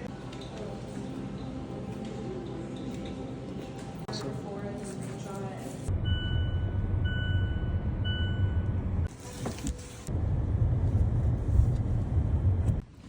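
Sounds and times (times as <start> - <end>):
vehicle rumble: 5.9 - 12.8
electronic beep: 6.0 - 8.8.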